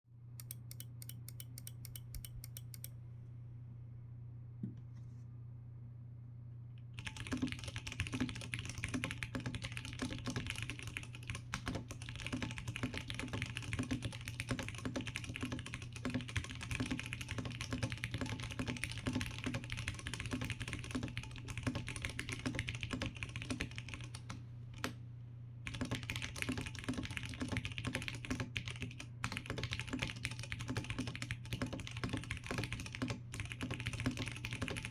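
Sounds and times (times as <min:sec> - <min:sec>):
steady low hum: 0:00.1 - 0:17.2
fast mechanical keyboard typing: 0:07.0 - 0:24.9, 0:25.7 - 0:34.9.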